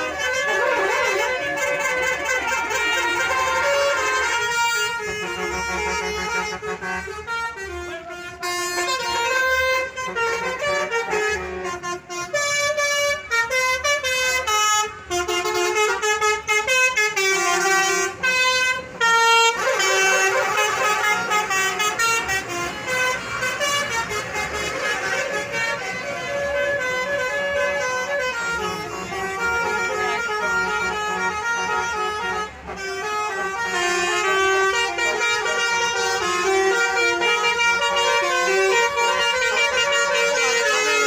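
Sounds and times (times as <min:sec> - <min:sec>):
multi-tone bus air horns: 0:00.0 - 0:41.0.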